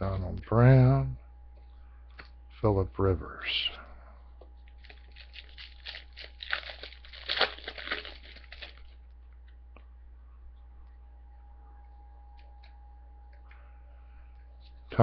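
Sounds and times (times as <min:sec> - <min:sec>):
foil wrapper tearing and crinkling: 0:04.7 - 0:09.0.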